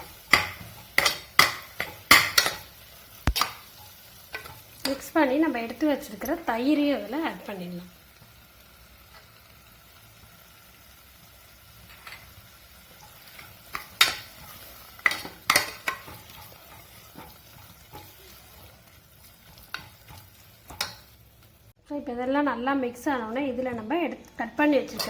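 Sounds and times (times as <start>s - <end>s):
spoon scraping metal pan: 0.0s - 5.2s, 13.0s - 21.2s
faint frying sizzle: 0.0s - 25.0s.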